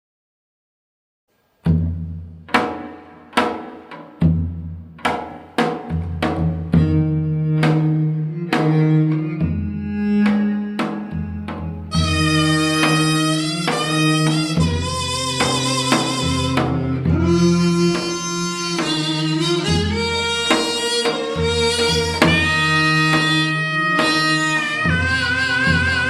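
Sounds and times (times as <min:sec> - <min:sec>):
struck string notes: 0:06.3 - 0:26.0
double-reed wind instrument: 0:06.7 - 0:26.0
low bass string tones: 0:21.4 - 0:26.0.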